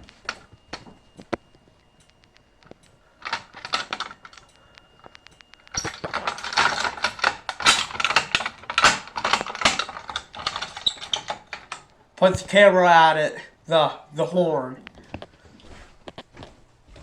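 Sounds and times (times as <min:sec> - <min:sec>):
mechanical clicking and clattering: 0:00.0 - 0:12.3.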